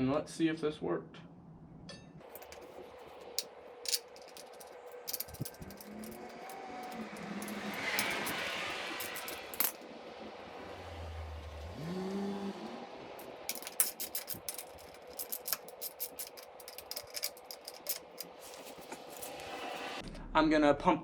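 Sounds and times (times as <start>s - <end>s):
metal tools clattering: 2.2s - 9.8s, 13.2s - 19.8s.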